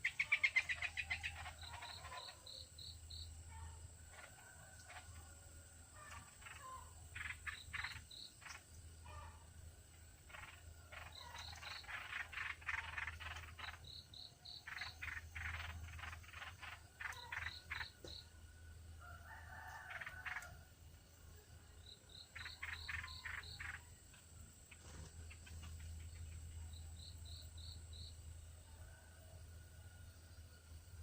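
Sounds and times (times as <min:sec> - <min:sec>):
animal chattering calls: 0:00.0 - 0:02.8, 0:06.0 - 0:09.4, 0:10.2 - 0:18.0, 0:22.1 - 0:23.9
low steady hum: 0:00.0 - 0:19.3.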